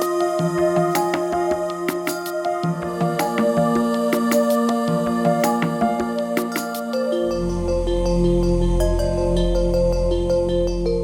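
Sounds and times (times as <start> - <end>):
soft instrumental music: 0.0 - 11.0.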